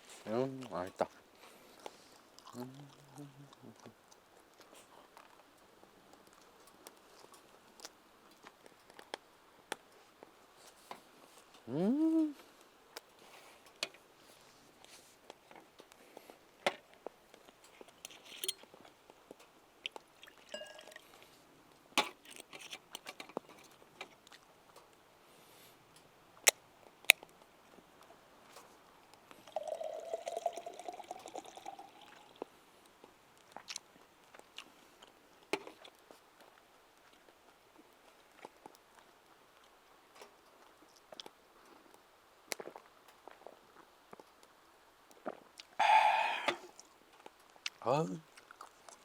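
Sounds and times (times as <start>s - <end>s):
liquid pouring into a cup: 20.2s - 21.1s, 29.4s - 32.5s.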